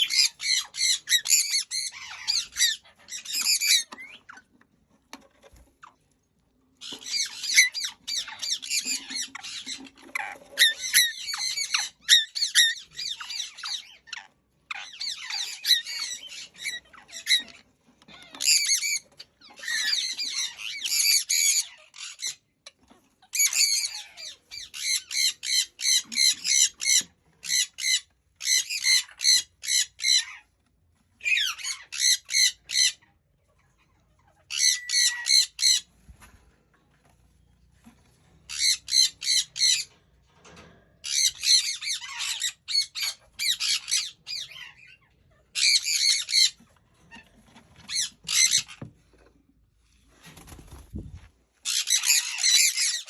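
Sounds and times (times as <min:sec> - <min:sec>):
conures screeching: 0:00.0 - 0:04.5, 0:06.8 - 0:22.6, 0:31.2 - 0:33.1, 0:34.2 - 0:35.9, 0:38.5 - 0:40.0, 0:41.1 - 0:48.9, 0:51.6 - 0:53.0.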